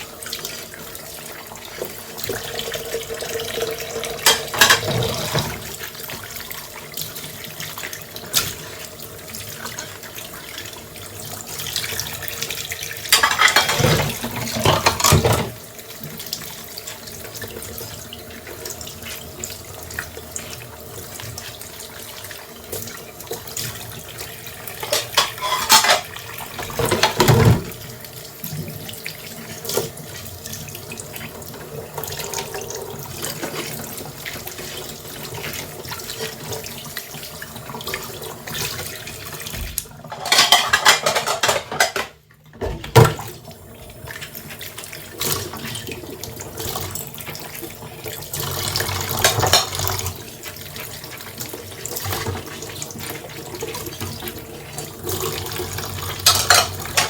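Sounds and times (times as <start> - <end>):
tap water running into sink: 0.0 - 57.0
dishes splashing and knocking: 3.7 - 5.7, 13.0 - 15.6, 24.7 - 27.8, 39.4 - 43.3, 48.8 - 50.2, 55.6 - 57.0.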